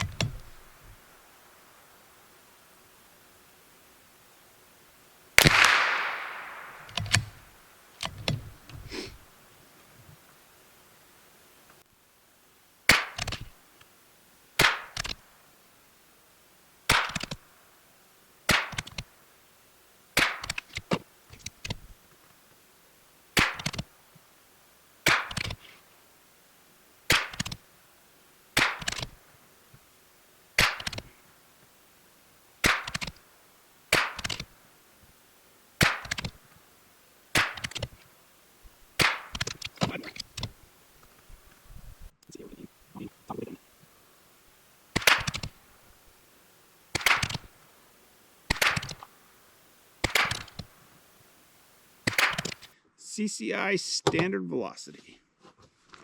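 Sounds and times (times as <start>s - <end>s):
rifle bolt clicks: 5.4s - 7.4s
rifle shots: 5.4s - 7.8s, 14.6s - 15.2s, 16.9s - 17.4s, 23.4s - 23.8s, 28.6s - 29.1s, 30.6s - 31.1s, 35.8s - 36.2s, 37.4s - 37.9s, 39.0s - 39.8s, 44.9s - 45.6s, 46.9s - 47.5s, 48.5s - 49.0s, 50.0s - 50.7s, 52.0s - 52.6s.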